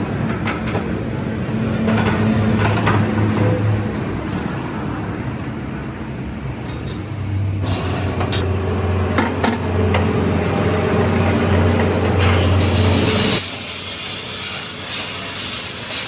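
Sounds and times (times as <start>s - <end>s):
heavy vehicle engine humming: 7.1s - 13.4s.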